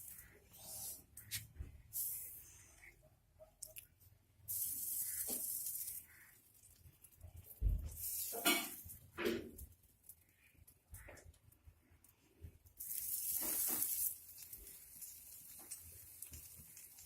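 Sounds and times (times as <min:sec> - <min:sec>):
sizzling in a pan: 0:00.0 - 0:02.8, 0:04.4 - 0:10.4, 0:12.6 - 0:17.0
spoon scraping a pan: 0:08.1 - 0:09.0.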